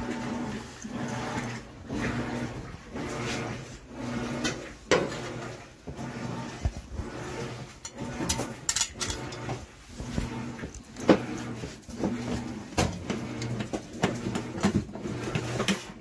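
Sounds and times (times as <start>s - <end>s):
metal clinks and knocks: 7.8s - 9.4s.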